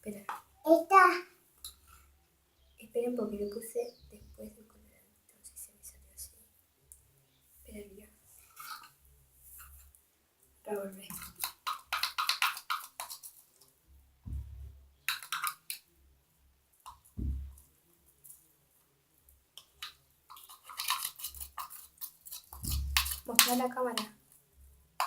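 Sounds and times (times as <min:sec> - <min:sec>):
slime squelching while stirred: 0:11.1 - 0:13.7, 0:19.6 - 0:24.0
dull knocks: 0:14.3 - 0:14.8, 0:17.2 - 0:17.6.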